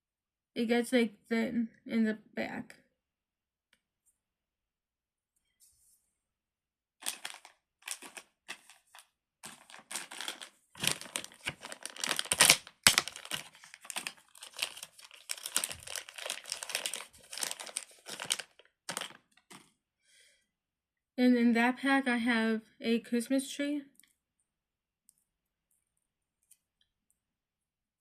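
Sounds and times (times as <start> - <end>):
packaging crinkling and rustling: 7.0 - 19.8.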